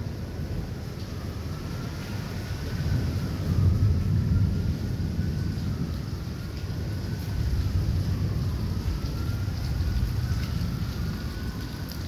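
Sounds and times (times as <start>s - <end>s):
distant siren wailing: 0.0s - 12.0s
rain falling: 0.0s - 12.0s
wind buffeting microphone: 0.0s - 12.0s.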